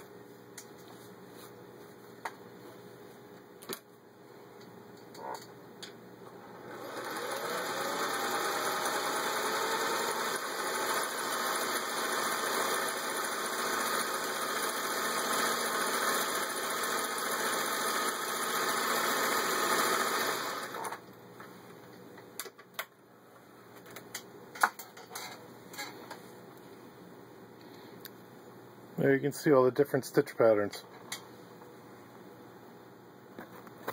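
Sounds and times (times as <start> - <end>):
sewing machine stitching: 6.6 - 21.0.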